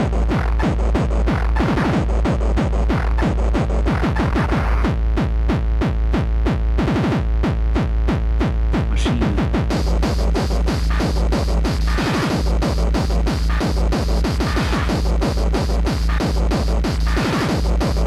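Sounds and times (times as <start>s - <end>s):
harsh synthesizer: 0.0s - 4.9s, 8.8s - 18.0s
fast kick drum: 0.0s - 18.0s.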